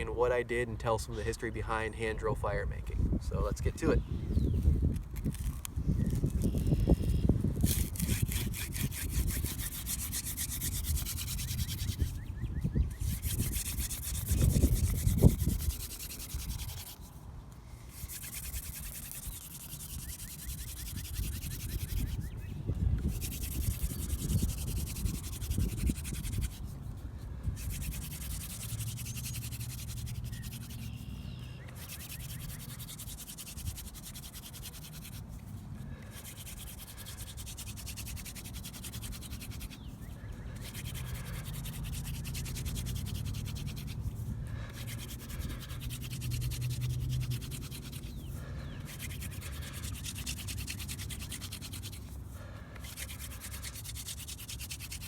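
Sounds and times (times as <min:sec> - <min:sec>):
wooden spindle rasping on board: 0:06.1 - 0:12.3, 0:12.9 - 0:17.2, 0:17.9 - 0:55.0.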